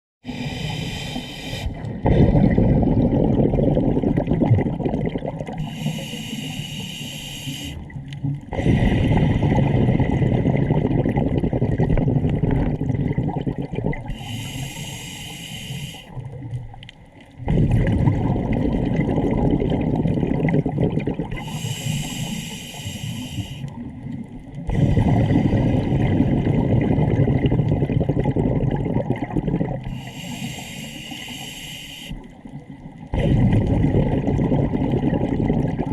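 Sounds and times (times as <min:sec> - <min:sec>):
hissing regulator inhale: 0:00.2 - 0:01.9, 0:05.6 - 0:07.8, 0:14.1 - 0:16.1, 0:21.4 - 0:23.7, 0:29.9 - 0:32.3
bubbling exhaled air: 0:00.2 - 0:16.6, 0:17.4 - 0:35.9.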